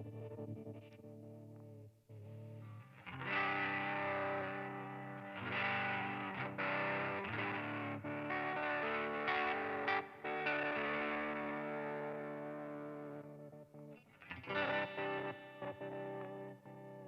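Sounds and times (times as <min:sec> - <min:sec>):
lo-fi electric guitar chords: 0:00.0 - 0:17.0.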